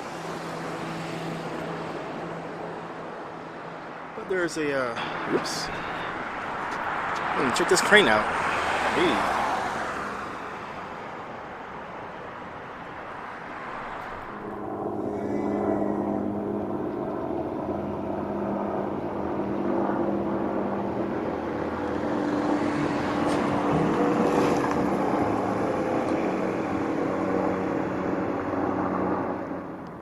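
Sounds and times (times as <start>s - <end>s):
large engine humming: 12.4s - 30.0s.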